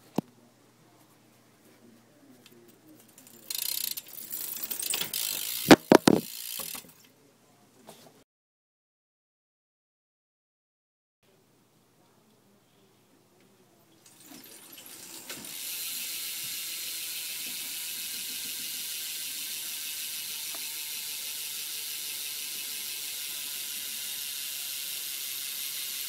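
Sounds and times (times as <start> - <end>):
bicycle hub freewheel clicking: 3.1 - 7.0, 14.4 - 26.0.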